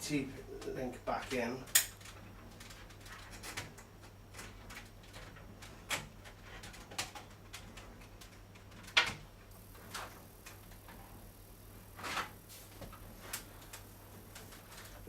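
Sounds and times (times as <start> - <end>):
cables clicking and knocking: 0.0 - 11.0
low steady hum: 0.0 - 15.0.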